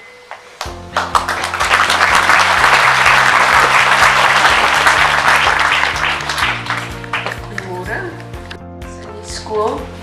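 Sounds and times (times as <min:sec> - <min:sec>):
background music: 0:00.0 - 0:10.0
audience applauding: 0:00.6 - 0:07.7.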